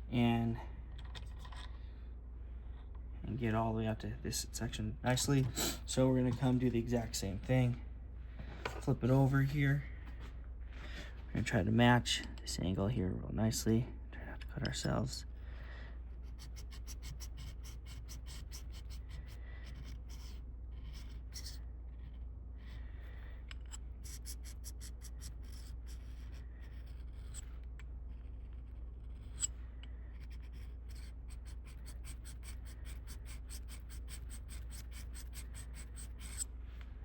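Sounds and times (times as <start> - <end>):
steady low hum: 0.0 - 37.0
blade scraping on sharpener: 16.3 - 22.8, 23.5 - 36.5.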